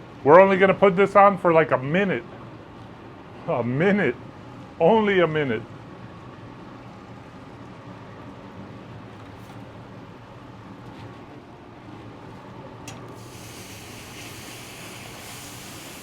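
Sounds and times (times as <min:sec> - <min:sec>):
gas griddle humming: 0:00.0 - 0:16.0
food sizzling: 0:13.2 - 0:16.0.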